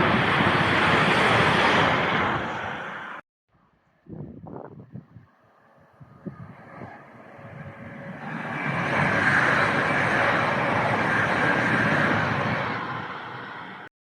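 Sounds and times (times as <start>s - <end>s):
train wheels rushing on rails: 6.5s - 13.9s.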